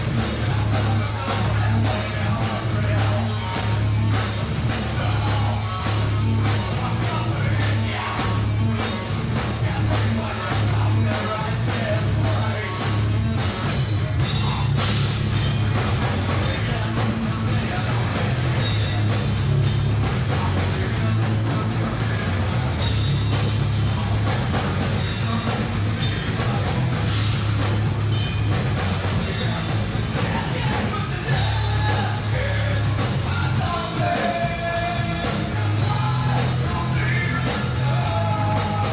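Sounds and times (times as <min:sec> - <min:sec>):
person singing: 0:00.0 - 0:14.9, 0:29.2 - 0:38.9
heavy guitar riffs: 0:00.0 - 0:38.9
metal band playing live: 0:00.0 - 0:38.9.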